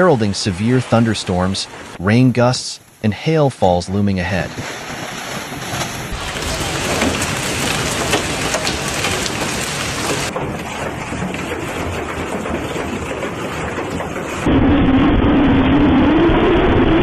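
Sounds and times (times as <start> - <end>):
low rumbling: 3.8 - 17.0
heavy rain pouring: 4.3 - 17.0.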